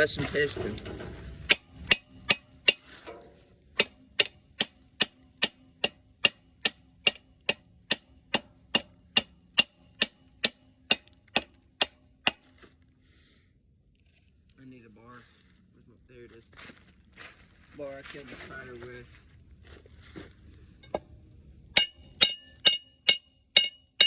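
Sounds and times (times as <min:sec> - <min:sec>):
hammer clanging on metal piston: 0:01.5 - 0:03.0, 0:03.8 - 0:12.5, 0:21.8 - 0:24.0.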